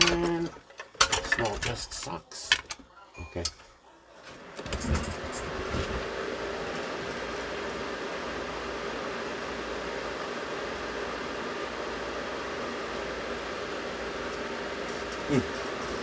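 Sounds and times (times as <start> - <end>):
small fan whirring: 3.6 - 16.0.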